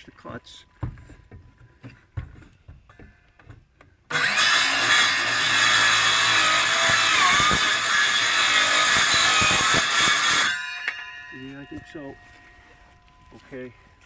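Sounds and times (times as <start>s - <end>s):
power saw running: 4.1s - 10.6s.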